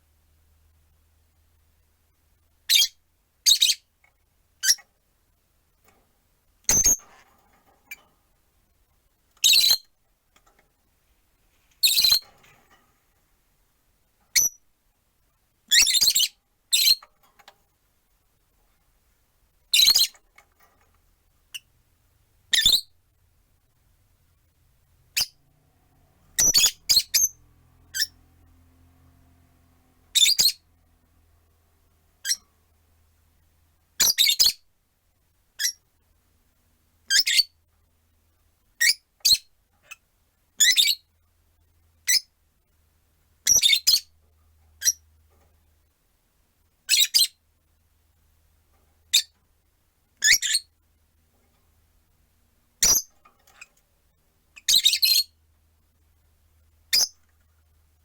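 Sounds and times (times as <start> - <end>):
lovebirds chirping: 11.7 - 12.2, 26.3 - 28.2, 30.1 - 30.6, 43.4 - 44.1, 54.6 - 55.4.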